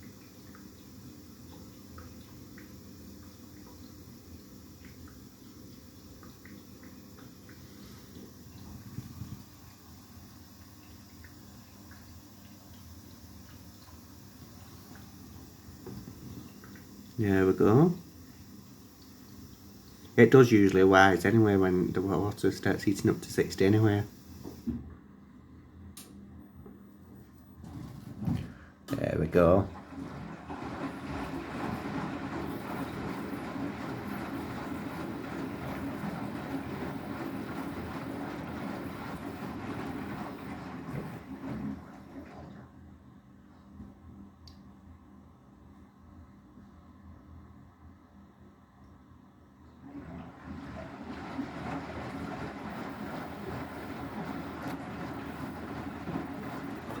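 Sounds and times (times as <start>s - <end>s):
washing machine drum churning: 0.0s - 24.9s, 27.6s - 42.9s, 49.8s - 57.0s
washing machine drum tumbling: 27.6s - 42.8s, 49.9s - 57.0s.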